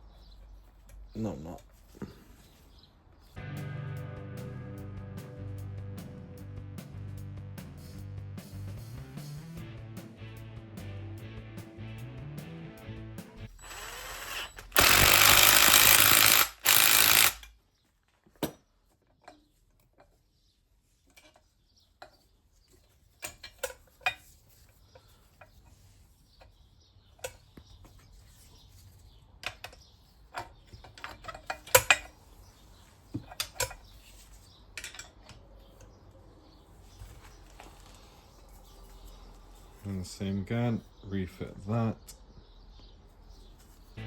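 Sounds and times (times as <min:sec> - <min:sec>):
power tool bursts: 0:13.5 - 0:17.5
metallic clicks of tools: 0:14.4 - 0:17.6, 0:29.4 - 0:32.2, 0:33.3 - 0:33.8.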